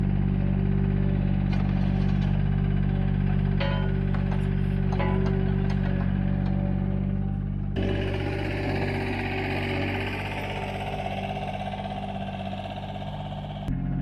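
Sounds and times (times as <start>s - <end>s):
engine running: 0.0s - 14.0s
music: 0.0s - 14.0s.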